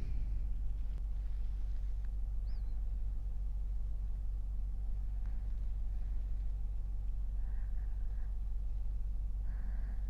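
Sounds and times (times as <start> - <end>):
soft sleeping breath: 0.0 - 2.3, 5.0 - 10.0
steady low hum: 0.0 - 10.0.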